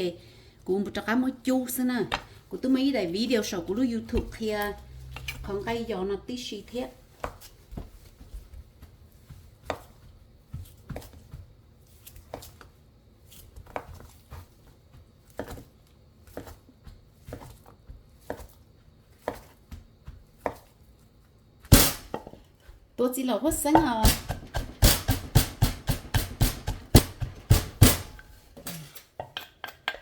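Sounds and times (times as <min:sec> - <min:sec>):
knife chopping on cutting board: 0:19.2 - 0:20.7, 0:23.6 - 0:28.4.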